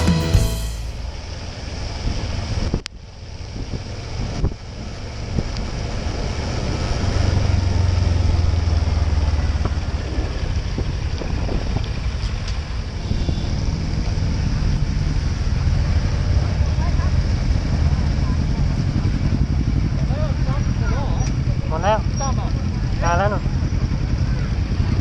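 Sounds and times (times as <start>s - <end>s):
steady low rumble: 0.0s - 4.6s
wind buffeting microphone: 3.5s - 16.4s.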